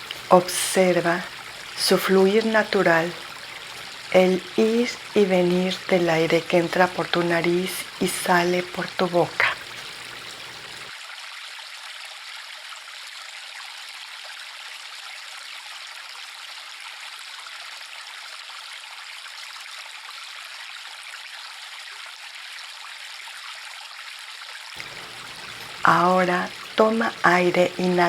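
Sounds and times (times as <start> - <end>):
river water flowing: 0.0 - 11.0, 24.8 - 28.0.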